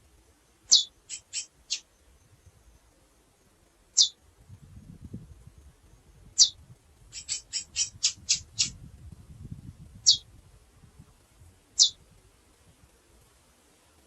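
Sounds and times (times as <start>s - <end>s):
finch calling sharp chips: 0.7s - 1.8s, 4.0s - 4.2s, 7.2s - 8.7s.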